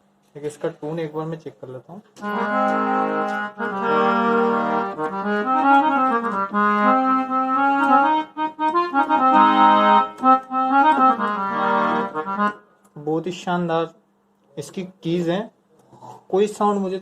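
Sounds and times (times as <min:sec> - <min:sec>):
keyboard playing harmonium chords: 0:02.2 - 0:12.8.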